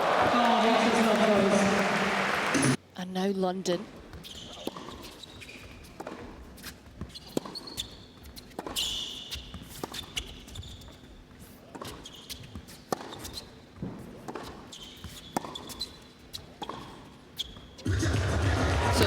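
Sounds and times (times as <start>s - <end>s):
shoes squeaking on court: 4.0s - 17.9s
rackets striking tennis ball: 12.7s - 15.8s.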